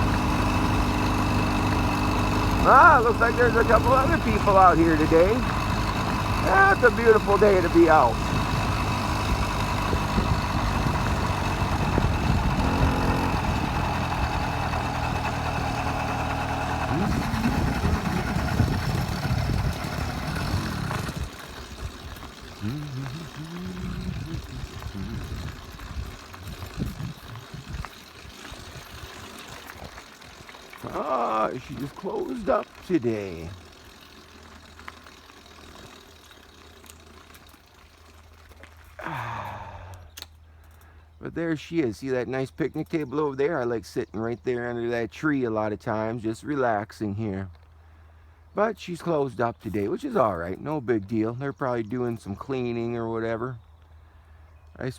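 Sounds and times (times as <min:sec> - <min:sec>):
small engine running at low revs: 0:00.0 - 0:41.0.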